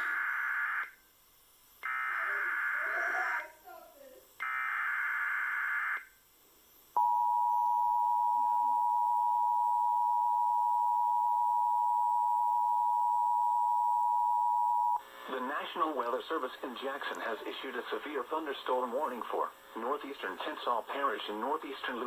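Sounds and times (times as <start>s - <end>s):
steady attention tone: 7.0s - 21.7s.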